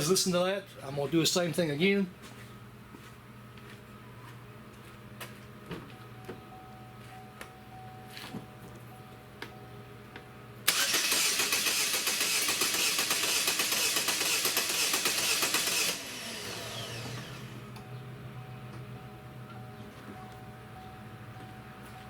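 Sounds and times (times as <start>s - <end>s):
low steady engine hum: 0.0s - 22.0s
starter motor cranking: 10.7s - 17.6s.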